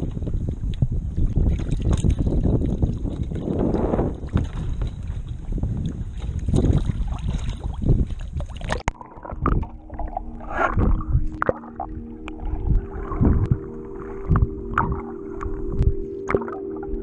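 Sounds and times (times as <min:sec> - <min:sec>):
water sloshing against microphone: 0:00.0 - 0:17.0
muffled underwater sound: 0:08.7 - 0:17.0
bubble clicks: 0:14.3 - 0:17.0.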